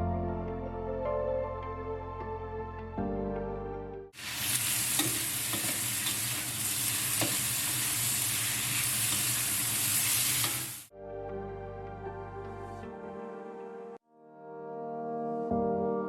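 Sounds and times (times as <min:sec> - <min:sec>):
food sizzling in a wok: 0:04.2 - 0:10.9.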